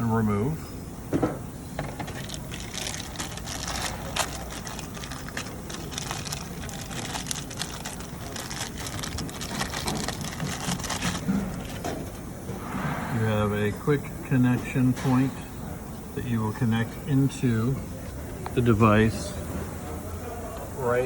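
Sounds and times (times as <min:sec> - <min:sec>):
rustling and clicking of parts: 0:01.8 - 0:12.3.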